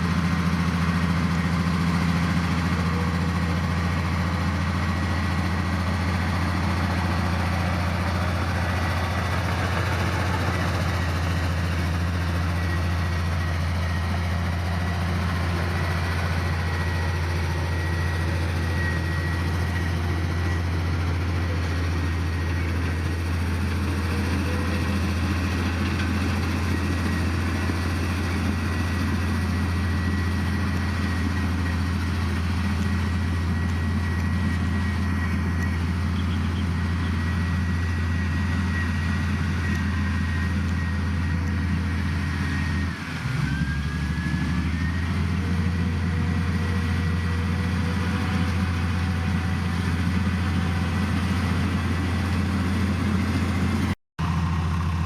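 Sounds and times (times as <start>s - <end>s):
heavy diesel engine running: 0.0s - 55.0s.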